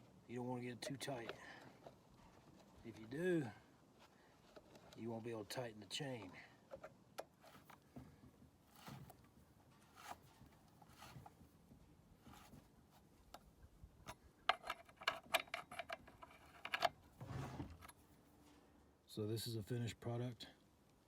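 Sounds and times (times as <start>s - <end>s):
metal clicks and scrapes: 13.3s - 17.0s.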